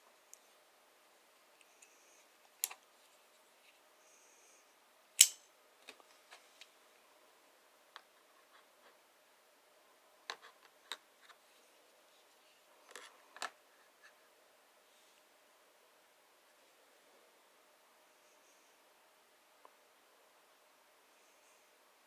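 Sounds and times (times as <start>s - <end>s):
loud sharp knife snap: 5.2s - 5.4s.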